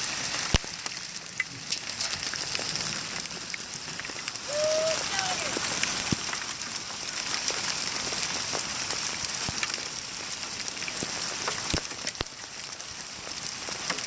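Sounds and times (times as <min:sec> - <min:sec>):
hail and heavy rain pelting: 0:00.0 - 0:14.0
hailstones striking: 0:00.0 - 0:14.0.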